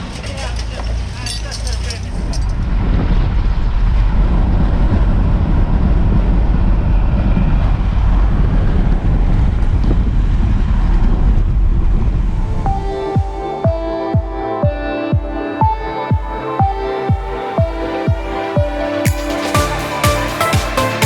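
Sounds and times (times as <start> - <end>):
road noise rumble: 0.0 - 12.7.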